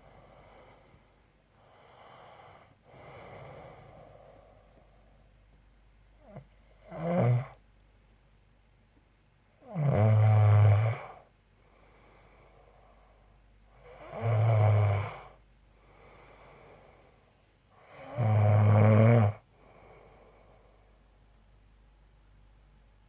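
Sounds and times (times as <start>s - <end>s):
soft breathing out: 0.0s - 5.3s, 15.8s - 17.4s
man snoring loudly: 6.8s - 7.6s, 9.6s - 11.2s, 13.8s - 15.4s, 17.8s - 19.4s.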